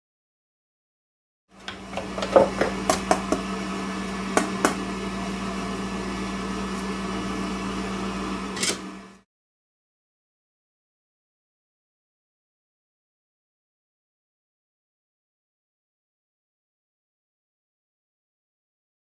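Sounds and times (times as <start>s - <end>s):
small motor humming: 1.6s - 9.2s.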